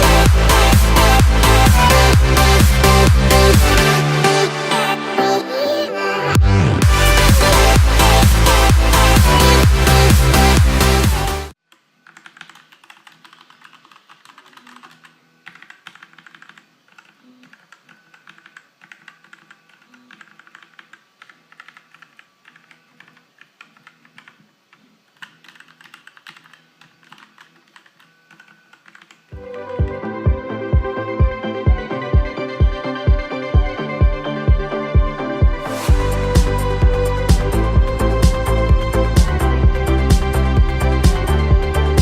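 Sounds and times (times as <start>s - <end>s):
loud electronic music: 0.0s - 11.6s, 29.4s - 42.0s
mechanical keyboard typing: 12.0s - 29.8s.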